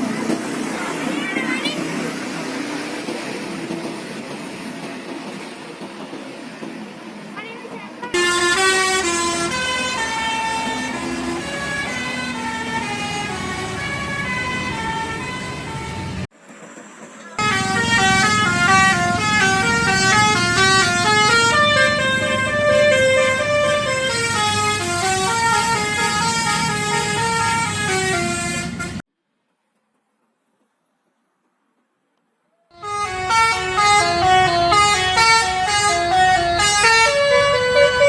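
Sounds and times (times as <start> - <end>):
multi-tone bus horn tune: 7.4 - 16.3, 17.4 - 29.0, 32.8 - 38.0.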